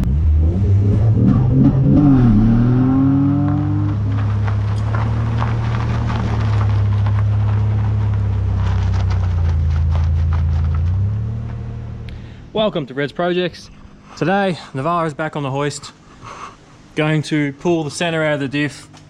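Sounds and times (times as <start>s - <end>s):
engine revving: 0.0s - 12.2s.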